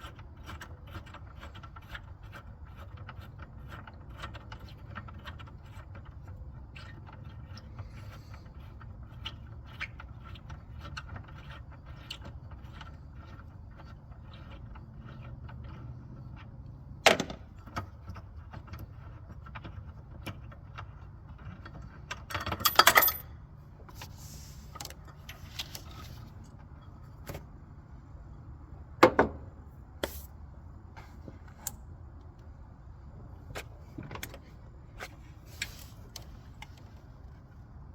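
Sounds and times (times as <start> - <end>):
metal tools clattering: 22.3 - 23.3.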